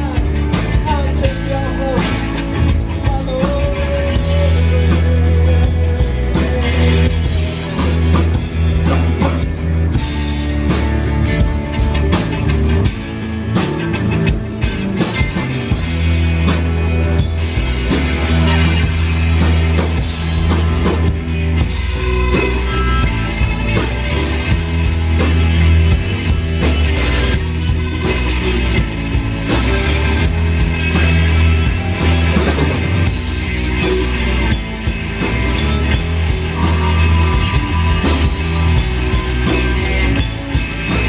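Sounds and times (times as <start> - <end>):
rock band playing: 0.0 - 41.0.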